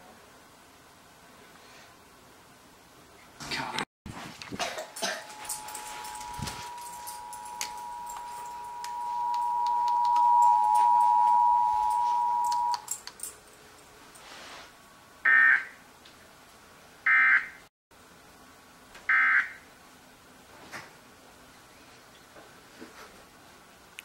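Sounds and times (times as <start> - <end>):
two-tone alert signal: 5.3 - 12.8.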